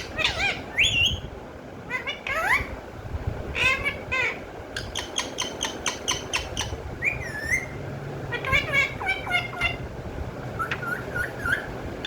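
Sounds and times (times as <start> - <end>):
parrot chirps: 0.0 - 1.2, 3.6 - 9.8, 10.6 - 11.8
parrot whistle glide: 7.0 - 7.8
parrot speech-like chatter: 8.3 - 9.8.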